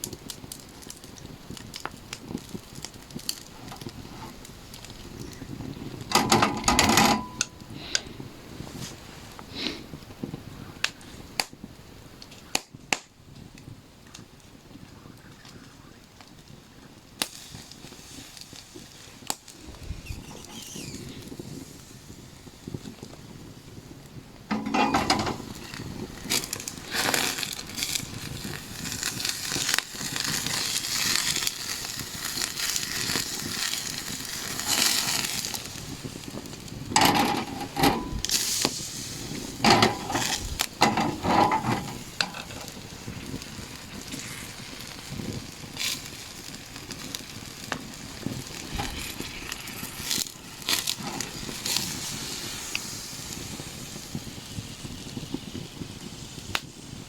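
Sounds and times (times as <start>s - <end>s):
food sizzling over campfire: 0.0s - 57.0s
cooking gear clattering: 6.1s - 7.5s, 24.5s - 27.9s, 36.9s - 42.8s, 50.0s - 51.9s.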